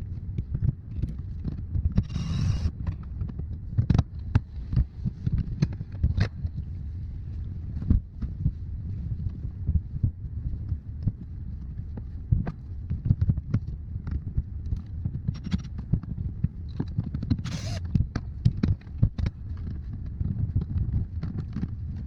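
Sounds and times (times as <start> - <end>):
steady low rumble: 0.0 - 22.0.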